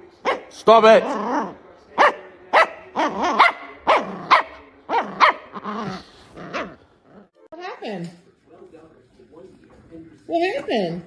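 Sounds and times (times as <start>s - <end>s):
dog barking: 0.2s - 5.9s, 6.5s - 6.8s.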